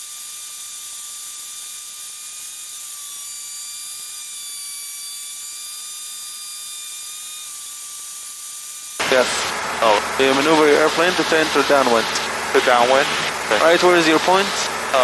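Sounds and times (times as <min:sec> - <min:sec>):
electronic hiss: 0:09.0 - 0:15.0
faint wavering whine: 0:09.0 - 0:15.0.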